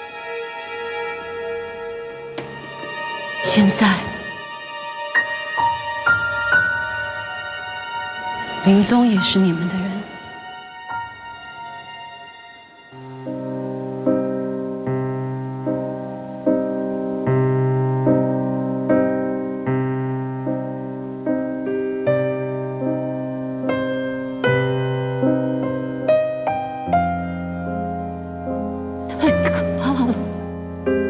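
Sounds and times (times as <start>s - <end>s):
slow solo piano music: 12.9s - 31.0s.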